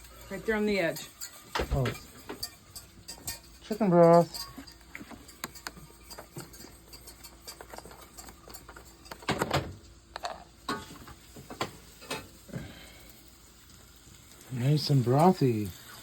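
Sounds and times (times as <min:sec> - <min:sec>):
kitchenware clatter: 0:00.0 - 0:12.4.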